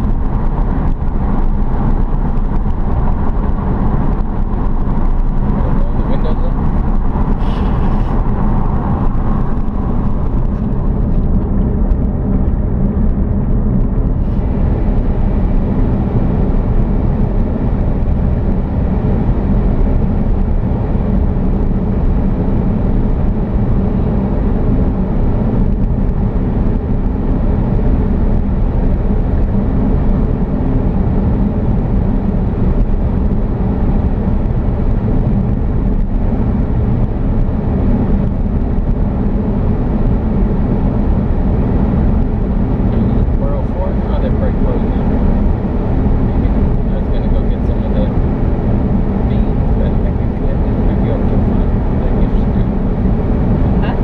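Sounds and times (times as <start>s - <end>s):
vehicle driving rumble: 0.0s - 54.0s.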